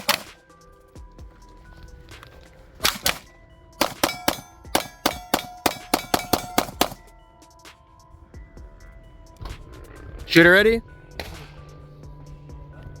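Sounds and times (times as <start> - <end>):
gunshots: 0.0 - 0.4, 2.8 - 7.0
steel plates clanging and ringing: 2.9 - 7.1.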